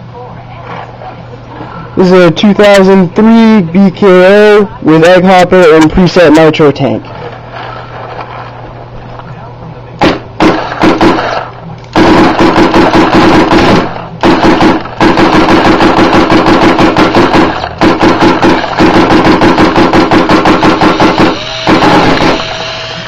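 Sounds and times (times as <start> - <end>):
paintball marker firing rapidly: 10.0 - 22.6.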